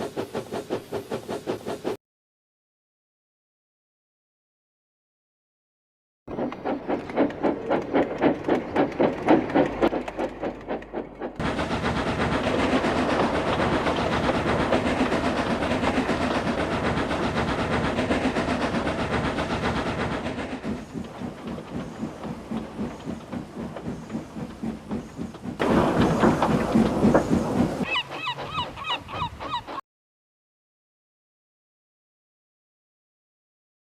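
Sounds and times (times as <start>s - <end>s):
steam locomotive chuffing: 0.0s - 2.0s, 6.3s - 29.8s
train running noise: 0.0s - 2.0s, 6.3s - 29.8s.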